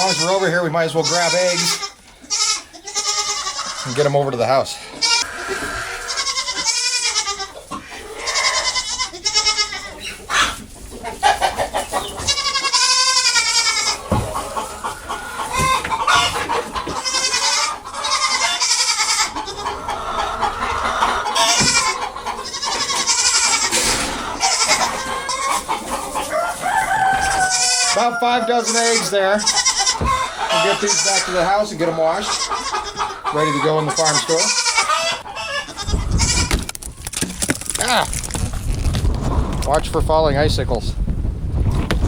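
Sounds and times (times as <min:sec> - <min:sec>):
goats bleating: 0:00.0 - 0:10.1, 0:12.2 - 0:14.2, 0:15.4 - 0:19.8, 0:21.2 - 0:25.7, 0:27.3 - 0:36.6
chickens clucking: 0:00.0 - 0:37.6.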